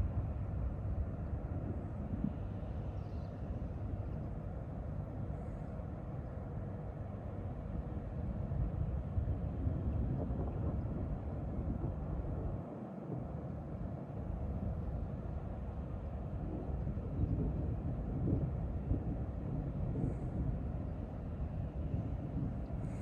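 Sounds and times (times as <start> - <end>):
low thunder rumble: 8.6 - 23.0.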